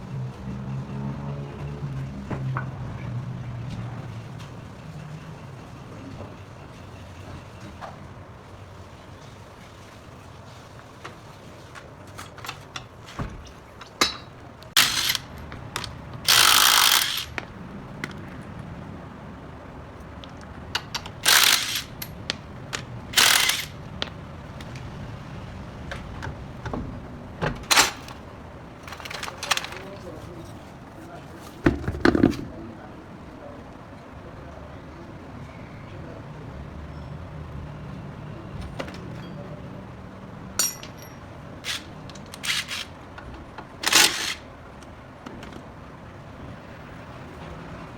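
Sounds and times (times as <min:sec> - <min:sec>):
ratchet clicks and metal clinks: 0:13.8 - 0:17.4, 0:20.8 - 0:23.8, 0:40.6 - 0:43.0, 0:43.8 - 0:44.4.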